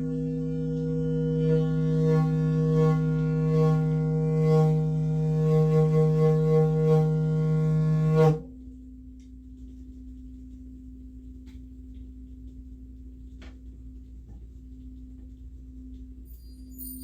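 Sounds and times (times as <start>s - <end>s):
sound bath drone: 0.0s - 9.2s, 10.2s - 17.0s
soft steady tone ringing: 16.2s - 17.0s.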